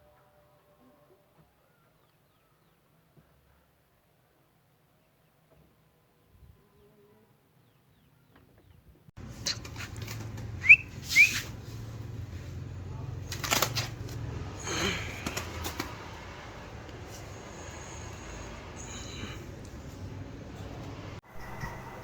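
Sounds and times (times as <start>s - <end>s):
birds chirping: 7.6s - 12.3s.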